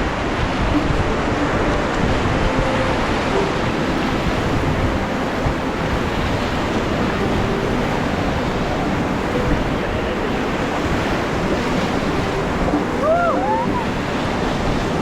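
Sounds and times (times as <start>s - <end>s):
river water rushing: 0.0s - 15.0s
wind buffeting microphone: 0.0s - 15.0s.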